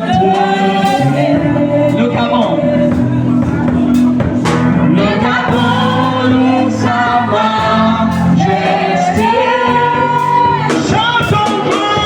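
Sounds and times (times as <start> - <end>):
choir singing long notes: 0.0 - 3.3, 4.8 - 10.9.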